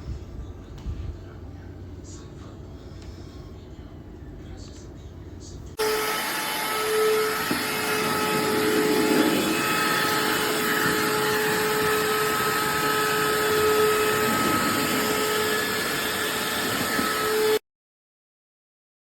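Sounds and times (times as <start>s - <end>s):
handheld vacuum cleaner running: 5.8s - 17.6s.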